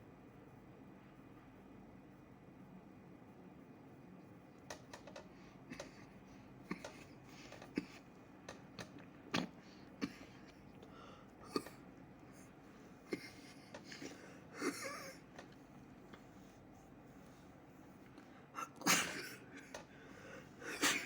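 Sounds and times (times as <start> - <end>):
small clicks: 4.6 - 5.9.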